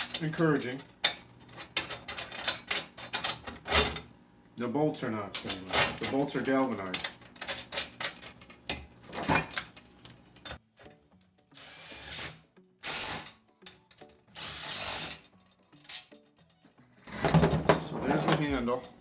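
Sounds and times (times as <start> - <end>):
power driver whirring: 14.3 - 15.2.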